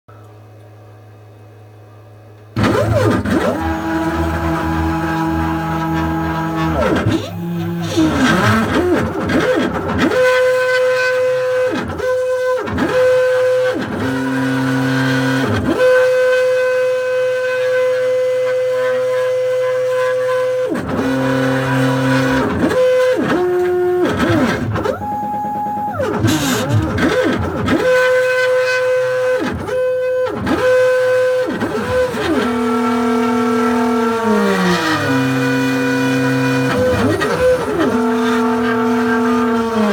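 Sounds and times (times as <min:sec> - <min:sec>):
stepper motors whining: 0:02.6 - 0:39.9.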